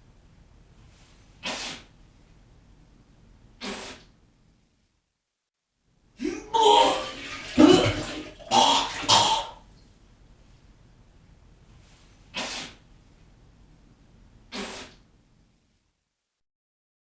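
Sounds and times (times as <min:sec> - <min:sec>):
person vomiting: 0:06.2 - 0:09.6.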